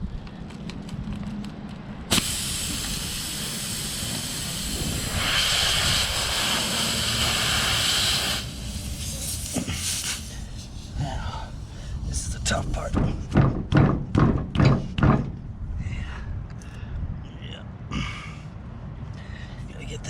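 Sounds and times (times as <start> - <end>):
air hissing from tire: 2.1 - 12.9.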